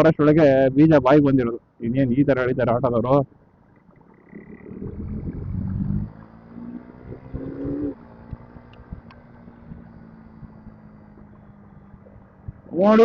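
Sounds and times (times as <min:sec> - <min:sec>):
motorcycle engine hum: 0:00.0 - 0:13.0
wind noise on microphone: 0:12.0 - 0:12.8.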